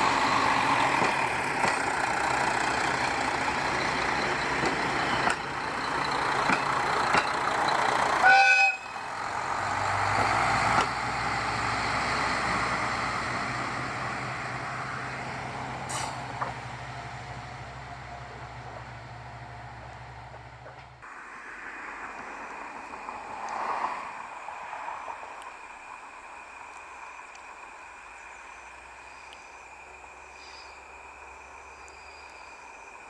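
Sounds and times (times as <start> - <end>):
diesel engine running: 0.0 - 21.0
railcar horn toot: 8.2 - 9.1.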